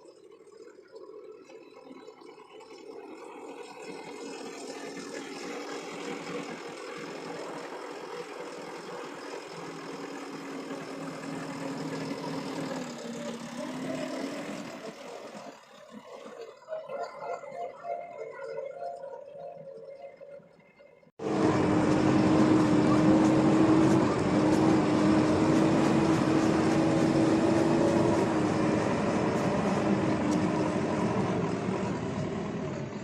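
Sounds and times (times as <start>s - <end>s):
vehicle engine running: 3.6s - 16.3s, 21.2s - 33.0s.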